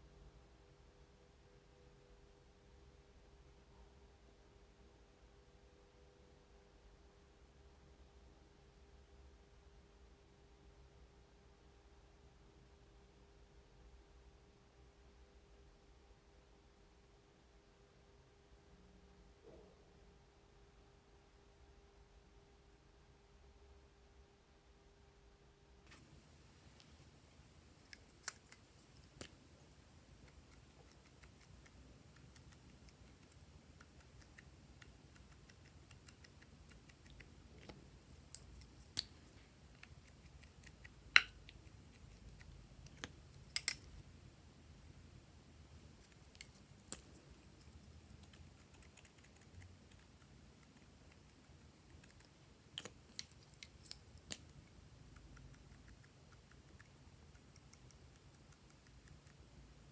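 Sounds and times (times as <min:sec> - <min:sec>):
sharp clicks and snips: 0:25.9 - 0:44.2, 0:45.7 - 0:59.9.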